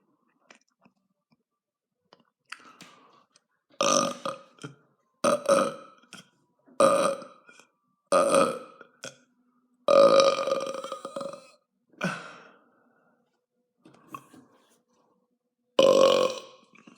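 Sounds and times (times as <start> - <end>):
man burping loudly: 3.8 - 5.9, 6.8 - 7.4, 8.1 - 9.2, 9.9 - 12.3, 15.8 - 16.6.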